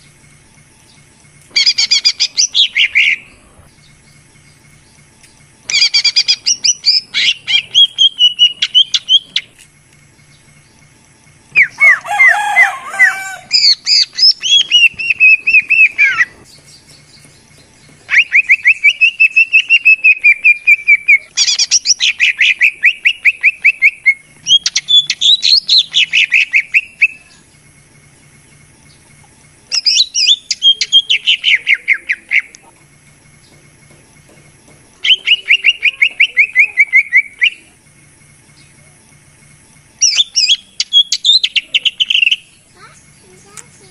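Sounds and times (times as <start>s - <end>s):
bird whistling song: 0.8s - 9.6s, 11.5s - 27.6s, 29.7s - 32.6s, 35.0s - 37.7s, 40.0s - 43.6s.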